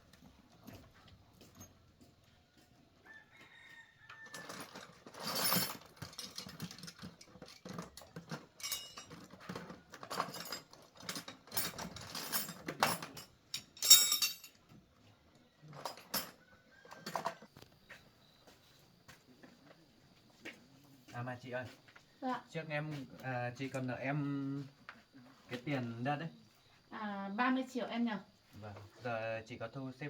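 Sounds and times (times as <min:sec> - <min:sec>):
metal tools clinking and scraping: 0:04.1 - 0:14.8, 0:15.7 - 0:17.5.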